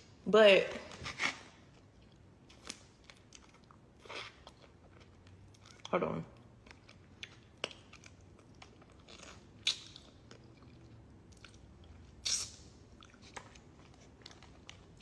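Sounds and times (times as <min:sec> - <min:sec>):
chewing and mouth smacking: 0:01.8 - 0:15.0.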